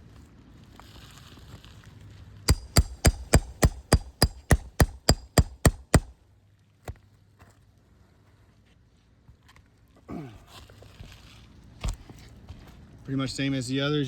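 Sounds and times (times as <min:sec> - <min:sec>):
hammer striking metal tool: 0:02.5 - 0:06.1.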